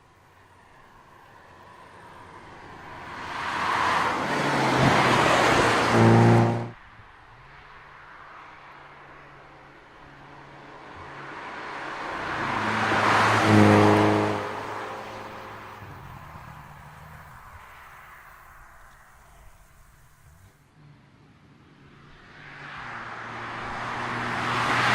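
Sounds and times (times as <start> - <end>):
car driving past: 2.9 - 6.8, 11.0 - 20.6, 22.2 - 24.9
loud engine note: 5.8 - 6.8.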